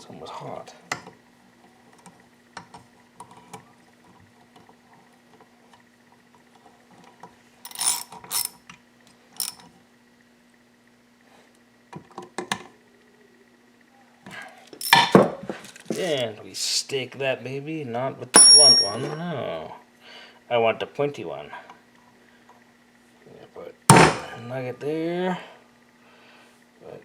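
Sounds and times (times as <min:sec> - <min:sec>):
faint steady hum: 0:00.0 - 0:27.0
sharp metal clinks: 0:18.4 - 0:19.2.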